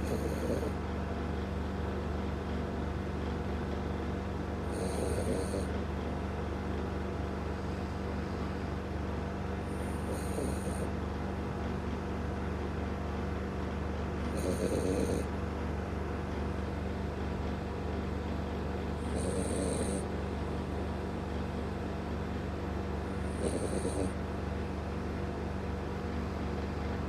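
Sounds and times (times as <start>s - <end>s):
dog snoring: 0.0s - 0.8s, 4.6s - 5.7s, 9.6s - 11.0s, 14.3s - 15.3s, 19.0s - 20.1s, 23.2s - 24.2s.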